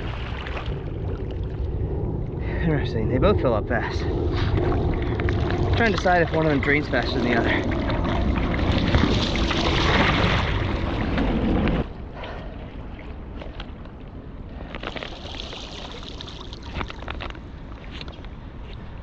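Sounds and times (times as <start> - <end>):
small splashes: 0.0 - 1.6, 4.6 - 11.2, 14.8 - 17.2
river water washing: 4.6 - 11.2, 14.9 - 17.0.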